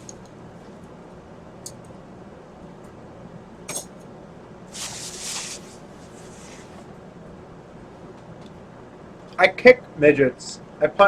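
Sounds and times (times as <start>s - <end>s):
steady low hum: 0.0s - 11.0s
rustling: 4.7s - 6.8s.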